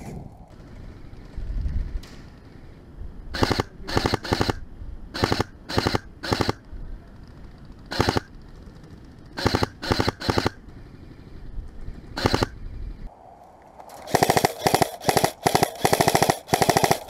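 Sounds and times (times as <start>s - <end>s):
airsoft gun full-auto bursts: 3.4s - 4.6s, 5.2s - 6.6s, 7.9s - 8.4s, 9.3s - 10.6s, 12.2s - 12.5s, 14.1s - 17.0s.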